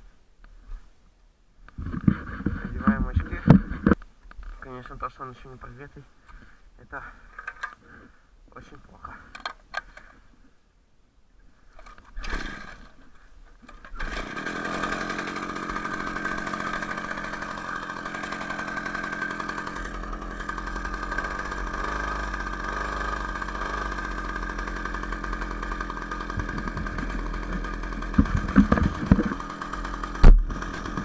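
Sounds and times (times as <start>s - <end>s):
two-stroke engine starting and running: 12.2s - 13.0s, 13.7s - 31.0s.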